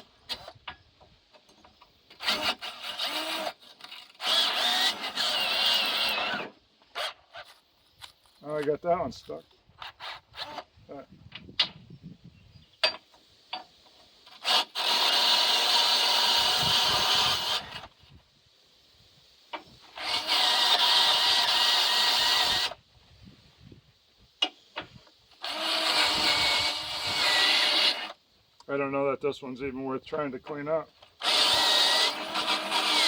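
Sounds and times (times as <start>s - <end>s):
electric drill wire brush scrubbing: 2.2s - 7.1s, 14.3s - 17.8s, 19.9s - 22.8s, 25.4s - 28.2s, 31.2s - 33.0s.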